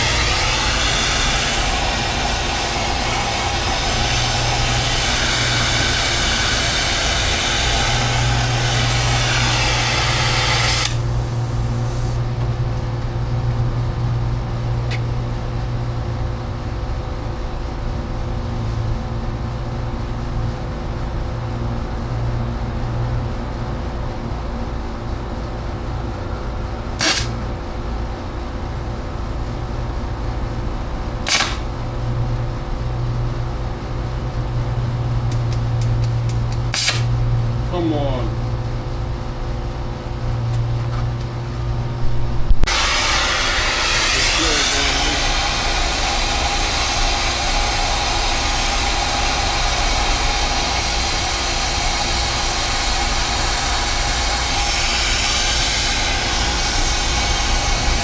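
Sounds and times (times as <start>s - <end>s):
torch flame hissing: 0.0s - 12.3s, 27.0s - 27.4s, 41.9s - 58.0s
steady low hum: 0.0s - 58.0s.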